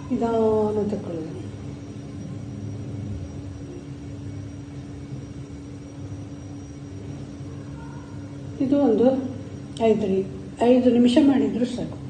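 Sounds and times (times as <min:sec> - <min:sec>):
low background rumble: 0:00.0 - 0:12.0
low hum: 0:00.0 - 0:12.0.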